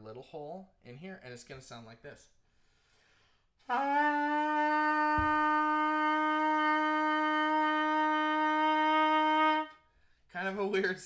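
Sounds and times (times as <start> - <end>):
buzzed trumpet mouthpiece note: 3.7 - 9.8.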